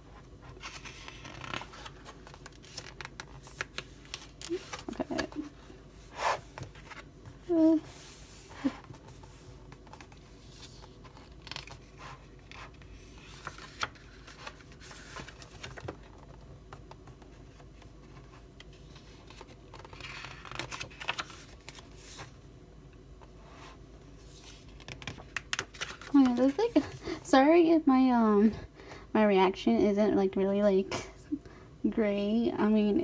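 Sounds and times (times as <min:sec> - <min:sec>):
paper pages rustling: 0:00.4 - 0:22.4, 0:24.2 - 0:27.2.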